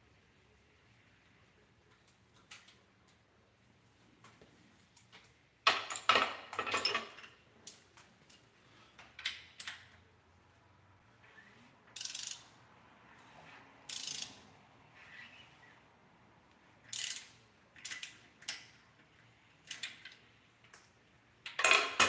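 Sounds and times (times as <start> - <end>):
metal tools clinking: 5.7 - 7.4
ratchet wrench clicking: 11.9 - 12.5, 13.9 - 14.4, 16.8 - 18.8.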